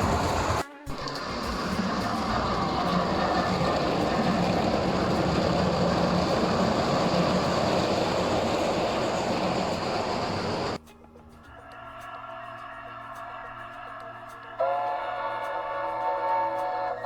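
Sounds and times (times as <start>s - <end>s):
model train wheels on rail: 0.0s - 10.8s.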